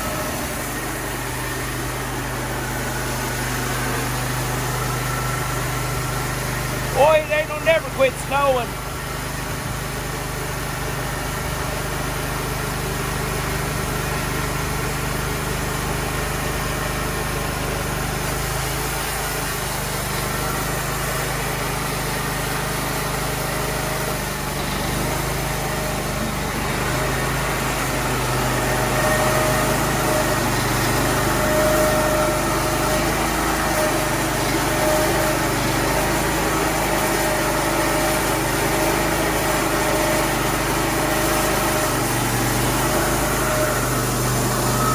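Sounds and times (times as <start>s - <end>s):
sawmill engine running: 0.0s - 44.9s
high steady whine: 43.0s - 44.9s.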